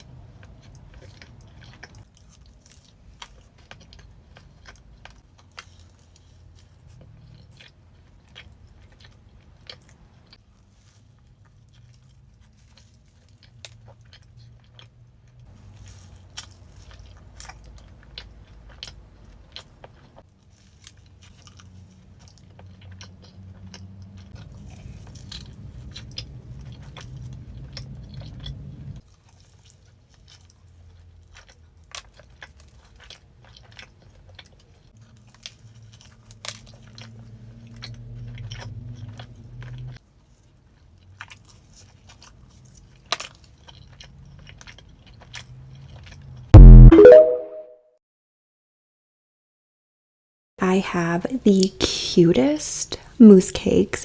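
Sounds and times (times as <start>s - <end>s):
person chewing crunchy food: 0.0s - 46.8s
low background hum: 50.6s - 54.0s.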